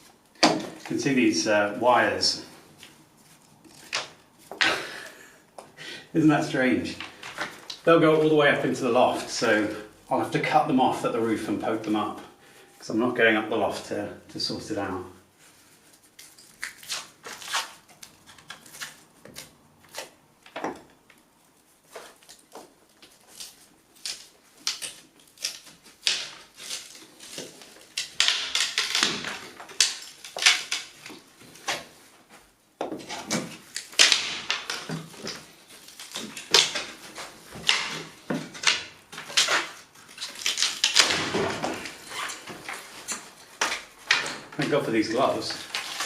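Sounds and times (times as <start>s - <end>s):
wooden casing cracking and knocking: 0.0s - 1.0s, 2.8s - 5.7s, 21.9s - 46.0s.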